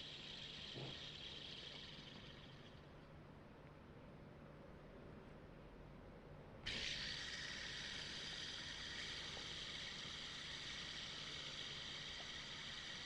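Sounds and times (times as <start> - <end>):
fidget spinner whirring: 0.0 - 3.0, 6.7 - 13.0.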